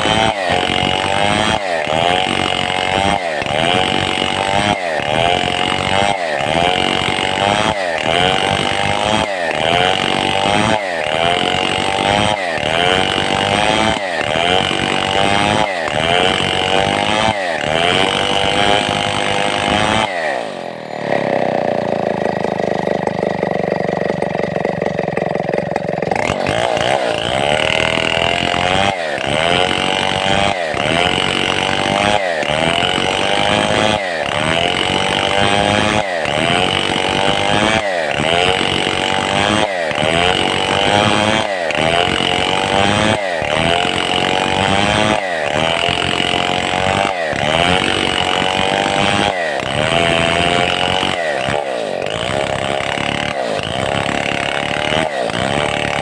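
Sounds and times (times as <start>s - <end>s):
chainsaw ripping a log: 0.0s - 56.0s.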